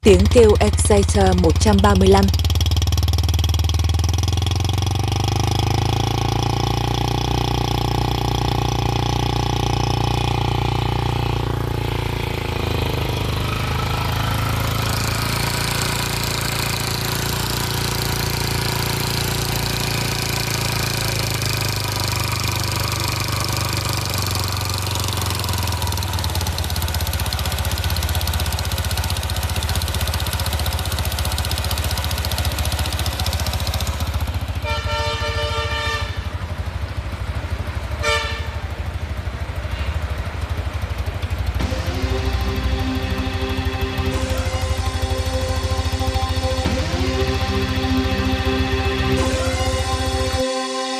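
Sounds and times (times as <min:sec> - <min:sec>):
motorcycle engine running steadily: 0:00.0 - 0:50.4
pulsing tone: 0:04.2 - 0:25.3, 0:41.6 - 0:50.9
short tone: 0:41.6 - 0:50.9.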